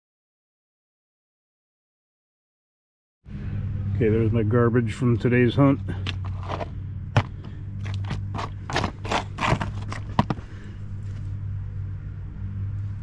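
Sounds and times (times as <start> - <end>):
steady low hum: 3.3 - 13.0.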